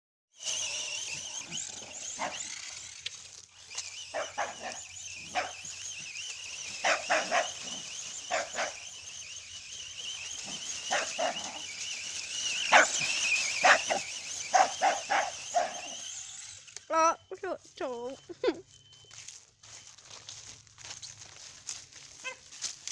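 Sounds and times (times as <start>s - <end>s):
rc car motor whining: 0.3s - 22.9s
dog barking: 2.2s - 2.4s, 4.1s - 5.6s, 6.8s - 8.8s, 10.9s - 11.6s, 12.7s - 13.0s, 13.6s - 16.0s, 22.2s - 22.5s.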